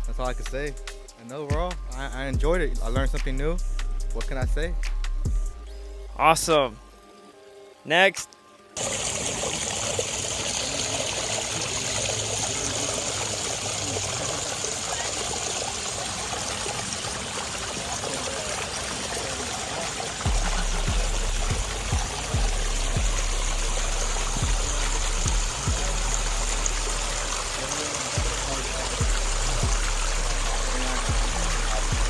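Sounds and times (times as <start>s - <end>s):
low buffeting rumble with thumps: 1.9s - 5.7s, 20.3s - 27.4s
waterfall splashing and trickling: 8.7s - 32.0s.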